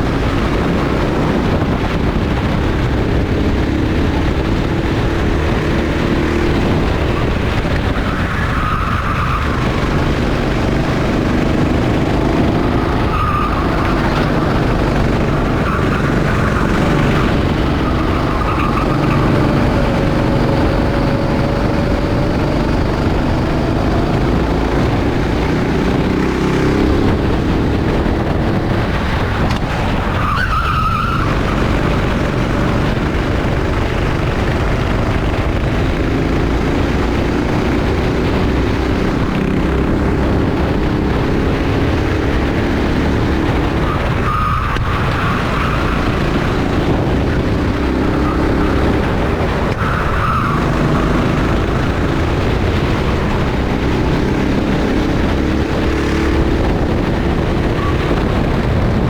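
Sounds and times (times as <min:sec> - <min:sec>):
go-kart engines racing: 0:00.0 - 0:59.0
tyres squealing: 0:07.1 - 0:22.8, 0:43.3 - 0:53.5.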